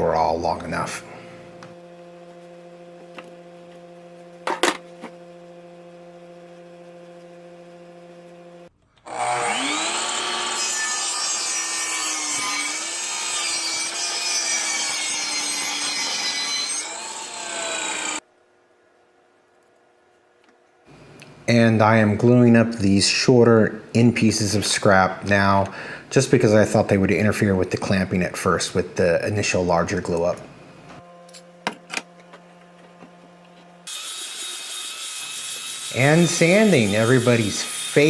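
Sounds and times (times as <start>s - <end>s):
electrical hum: 0.0s - 10.9s, 17.0s - 33.9s
power saw cutting wood: 9.0s - 18.2s, 33.8s - 38.0s.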